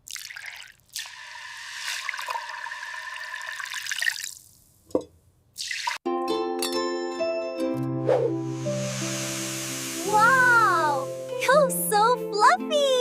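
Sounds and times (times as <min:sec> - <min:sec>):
water pouring: 0:00.0 - 0:04.7, 0:05.6 - 0:06.0, 0:08.6 - 0:11.4
rising swoosh: 0:08.0 - 0:11.5.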